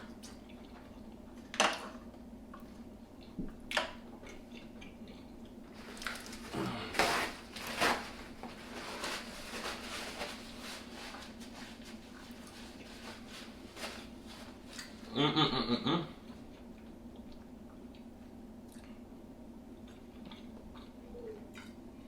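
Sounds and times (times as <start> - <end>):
chewing: 0.0 - 6.5, 19.8 - 21.8
short pitched vocal sound: 15.1 - 16.2.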